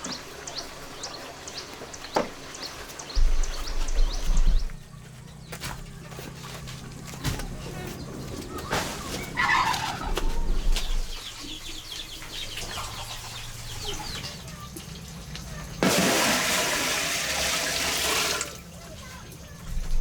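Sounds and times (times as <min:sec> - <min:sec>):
small bird chirps: 0:00.0 - 0:06.4
chicken calling: 0:07.8 - 0:14.6.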